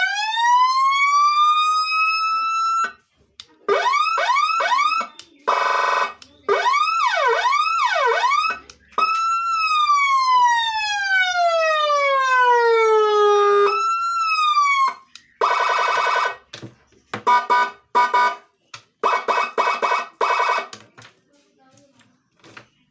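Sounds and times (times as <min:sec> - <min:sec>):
electronic siren cycling tones: 0:00.0 - 0:03.0, 0:03.7 - 0:16.4, 0:19.0 - 0:20.7
buzzy horn blasts: 0:17.3 - 0:18.4.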